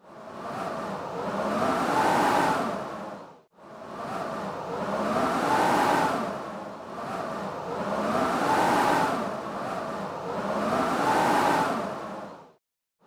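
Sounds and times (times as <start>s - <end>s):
blizzard wind howling: 0.1s - 12.4s.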